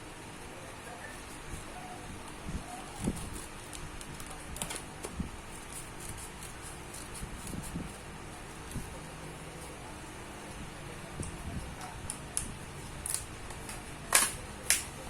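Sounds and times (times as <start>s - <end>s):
steady hum: 0.0s - 15.0s.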